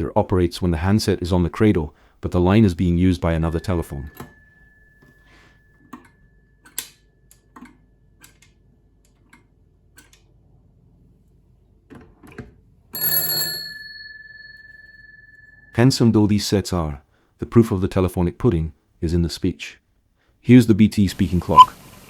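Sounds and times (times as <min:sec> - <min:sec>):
telephone bell ringing: 0:03.3 - 0:05.8, 0:13.0 - 0:15.8.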